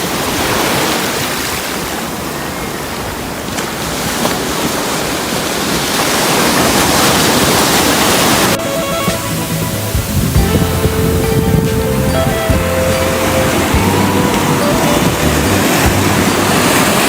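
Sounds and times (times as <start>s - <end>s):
ocean surf washing on beach: 0.0s - 17.0s
wind noise on microphone: 6.0s - 17.0s.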